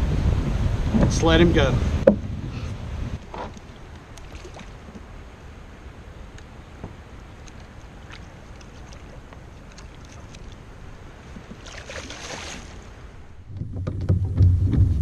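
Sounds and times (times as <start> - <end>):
knocks and clicks on hull: 2.0 - 2.4, 3.2 - 5.1, 6.4 - 10.6, 11.3 - 12.4, 13.4 - 15.0
water lapping at hull: 2.0 - 14.4.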